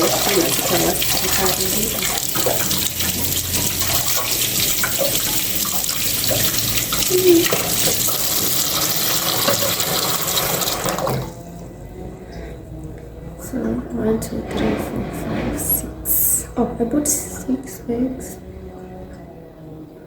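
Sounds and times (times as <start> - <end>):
tap water running into sink: 0.0 - 11.6.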